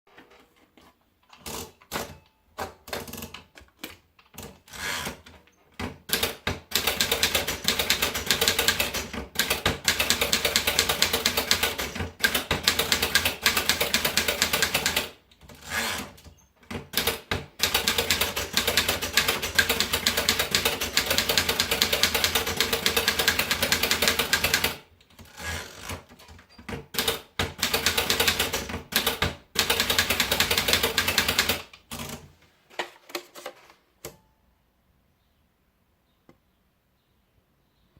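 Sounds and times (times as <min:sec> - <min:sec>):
typewriter keystrokes: 0:05.8 - 0:24.8, 0:25.8 - 0:32.2.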